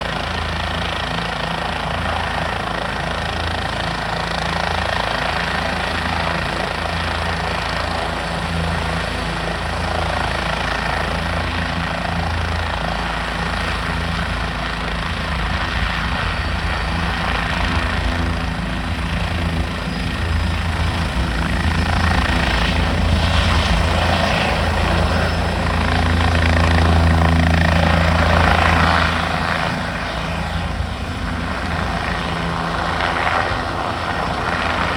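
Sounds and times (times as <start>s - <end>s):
helicopter rotor and engine: 0.0s - 34.9s.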